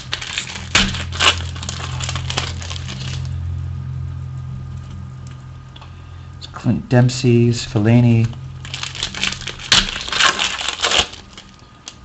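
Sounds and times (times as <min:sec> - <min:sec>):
foil wrappers crackling: 0:00.0 - 0:03.4, 0:07.7 - 0:12.0
steady low hum: 0:00.0 - 0:12.0.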